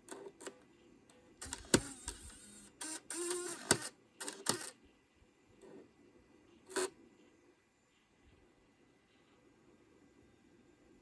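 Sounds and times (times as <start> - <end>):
computer parts clicking: 1.4 - 4.7.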